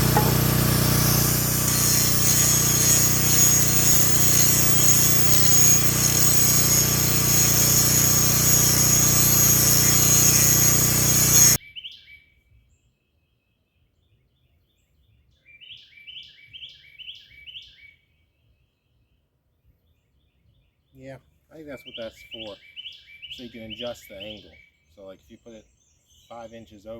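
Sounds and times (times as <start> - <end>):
angle grinder running: 0.0 - 11.6.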